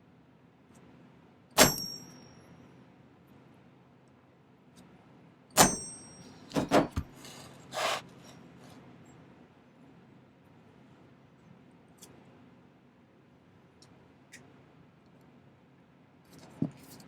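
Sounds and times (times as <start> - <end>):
hammer striking metal stamp: 1.6 - 2.2, 5.6 - 7.1
short scrape: 7.2 - 8.8.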